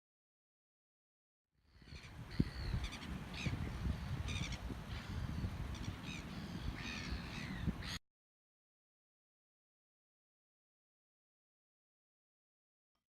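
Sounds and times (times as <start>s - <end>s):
birds calling harshly: 1.7s - 8.0s.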